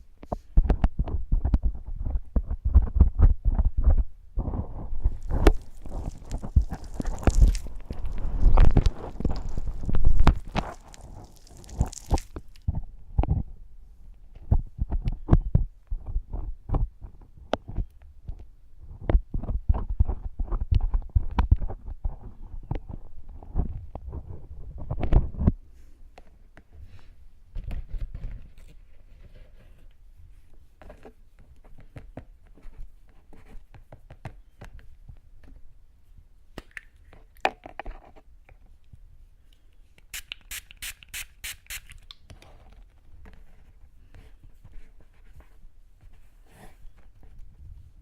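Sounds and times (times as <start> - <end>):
crisp sharp strokes: 4.8 - 12.6
tweezers scraping sticky wax: 5.1 - 12.6.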